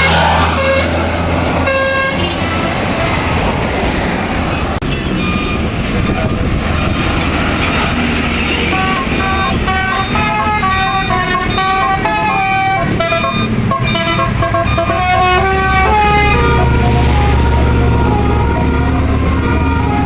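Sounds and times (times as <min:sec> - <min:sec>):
bus musical horn playing tune: 0:00.0 - 0:03.2, 0:08.3 - 0:20.0
bus engine rumble: 0:00.0 - 0:20.0.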